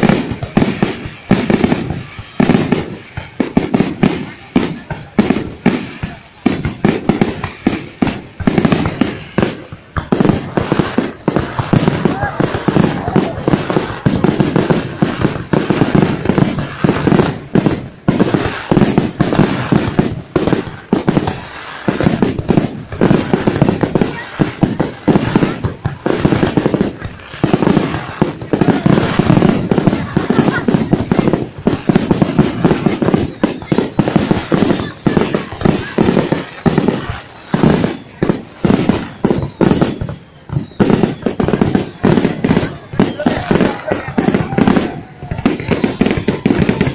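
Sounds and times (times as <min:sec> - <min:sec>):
fireworks bangs and pops: 0:00.0 - 0:46.9.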